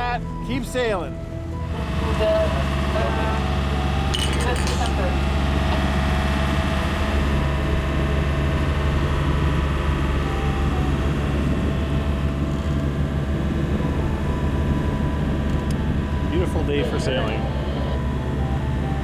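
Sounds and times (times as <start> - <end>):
boat engine droning: 0.0 - 19.0.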